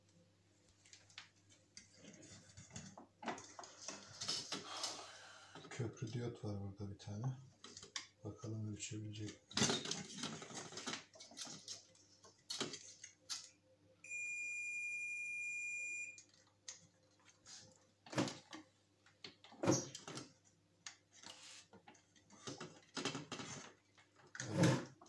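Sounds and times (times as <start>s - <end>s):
multimeter continuity beep: 14.0s - 16.2s.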